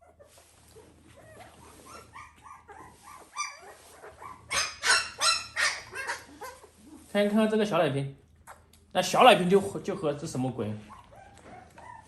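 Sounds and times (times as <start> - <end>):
puppy whimpering: 0.0 - 7.1, 10.8 - 12.0
puppy yelping: 0.0 - 7.1, 8.4 - 8.7, 10.8 - 12.0.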